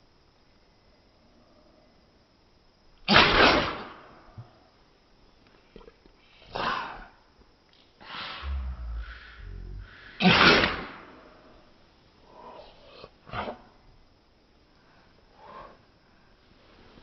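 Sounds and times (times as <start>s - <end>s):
cat sneezing: 3.1s - 3.8s, 10.2s - 10.9s
low rumble: 8.4s - 10.2s.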